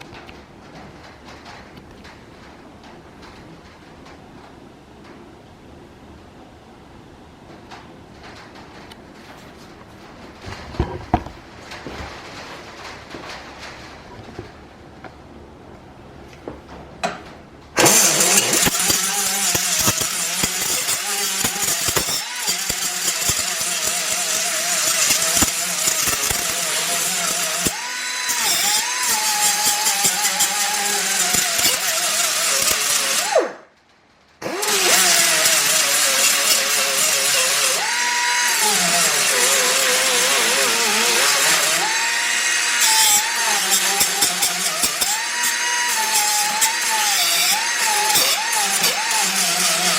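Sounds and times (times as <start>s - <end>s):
pneumatic cut-off tool whining: 17.8s - 33.6s, 34.4s - 49.9s.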